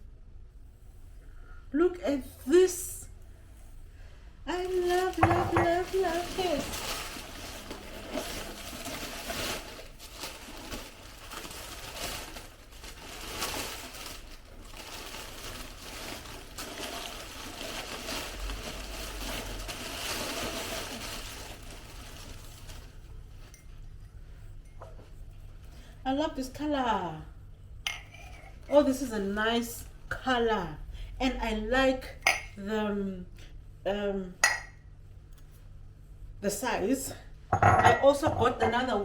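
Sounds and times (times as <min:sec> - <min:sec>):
packaging rustling: 0:04.9 - 0:22.9
ceramic mugs clinking: 0:27.8 - 0:28.6, 0:32.2 - 0:32.6, 0:34.4 - 0:34.8, 0:37.5 - 0:38.8.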